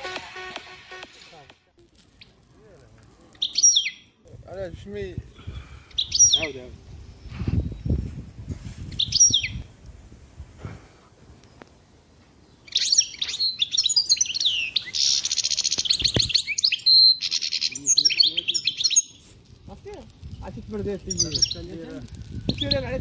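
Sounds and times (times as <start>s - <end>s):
songbird singing: 3.3s - 4.3s, 5.2s - 8.1s, 8.9s - 9.7s, 11.3s - 23.0s.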